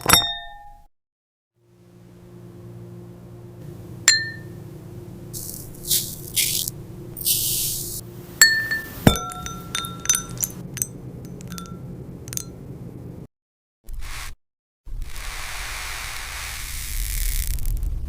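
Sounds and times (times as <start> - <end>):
glass clinking and ringing: 0.0 - 0.9, 4.1 - 4.6, 8.4 - 12.6
low steady hum: 1.6 - 13.3
short hissy crunches: 5.4 - 8.0.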